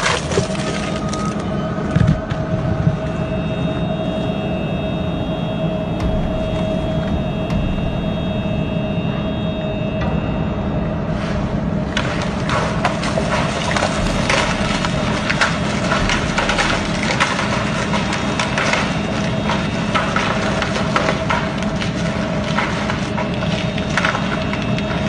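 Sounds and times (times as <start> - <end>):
engine drone: 0.1 - 25.0
rock cracking and crunching: 12.0 - 23.1.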